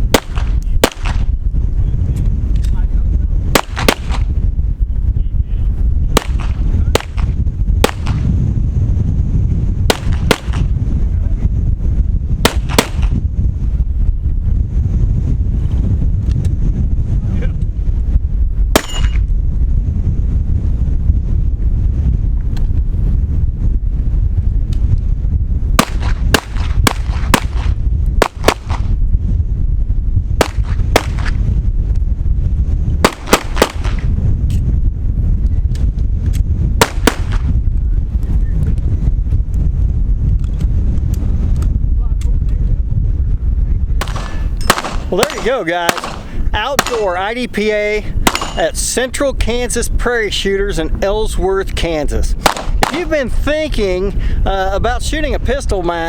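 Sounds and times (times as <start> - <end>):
wind rumbling on microphone: 0.0 - 56.0
pistol shots: 0.1 - 1.3, 3.5 - 4.3, 6.2 - 8.2, 9.9 - 10.7, 12.5 - 13.2, 18.8 - 19.2, 25.8 - 28.9, 30.4 - 31.4, 33.0 - 34.0, 36.8 - 37.5, 44.0 - 47.2, 48.2 - 48.8, 52.4 - 53.2.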